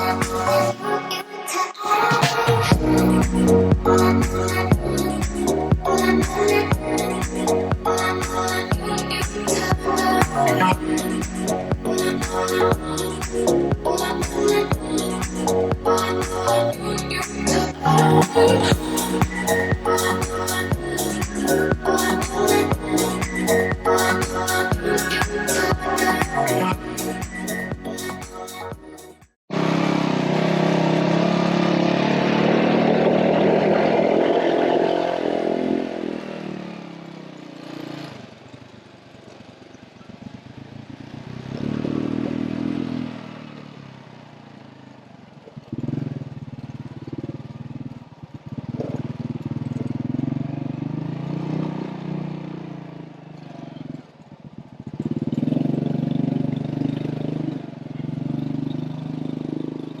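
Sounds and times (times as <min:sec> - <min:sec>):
vehicle engine revving: 0:29.5 - 0:36.8.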